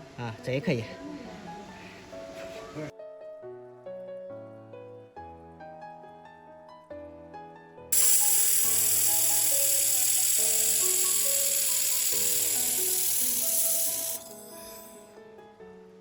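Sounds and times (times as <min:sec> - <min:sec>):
piano music: 0:01.0 - 0:16.0
laser welding gun hissing: 0:08.0 - 0:14.9.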